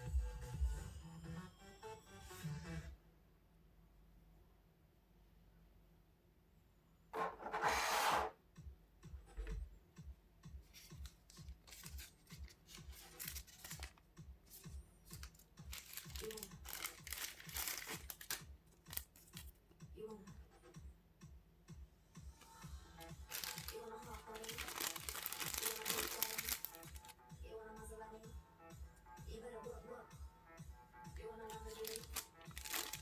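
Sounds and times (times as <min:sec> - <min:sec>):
background music with steady beat: 0:00.0 - 0:03.0, 0:08.4 - 0:33.0
packaging rustling and crackling: 0:10.7 - 0:19.5, 0:23.0 - 0:27.1, 0:31.5 - 0:33.0
packaging tearing: 0:11.6 - 0:14.0, 0:15.1 - 0:19.5, 0:23.2 - 0:27.1, 0:31.5 - 0:33.0.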